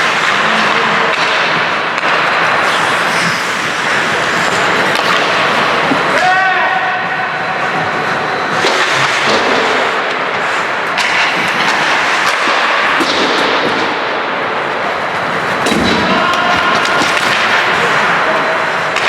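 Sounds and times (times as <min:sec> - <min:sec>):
skate blades scraping ice: 0:02.6 - 0:06.3.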